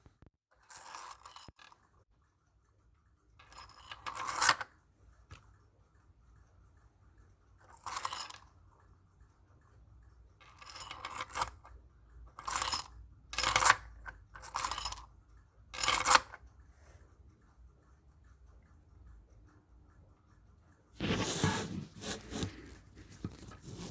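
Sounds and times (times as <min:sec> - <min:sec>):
plastic parts rasping scrapes: 0:21.0 - 0:23.9.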